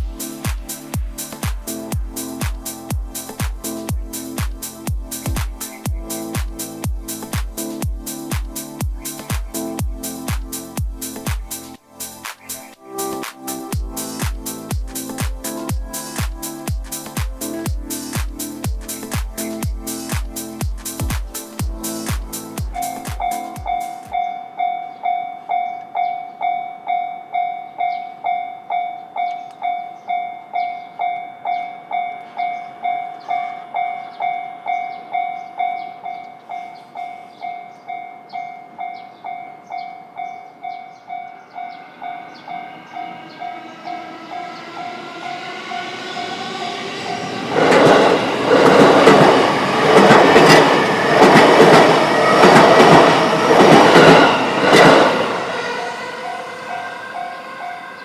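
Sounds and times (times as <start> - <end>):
electric train whining: 41.8 - 58.0
train wheels clattering on rails: 46.8 - 56.0.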